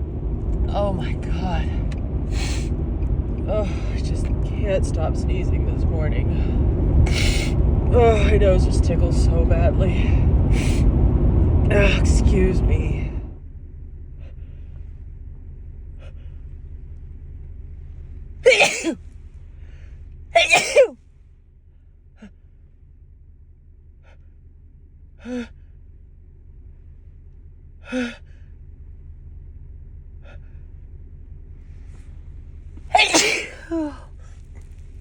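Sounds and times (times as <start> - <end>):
steady low rumble: 0.0 - 35.0
woman sneezing: 18.5 - 19.0, 20.4 - 20.9, 32.9 - 34.1.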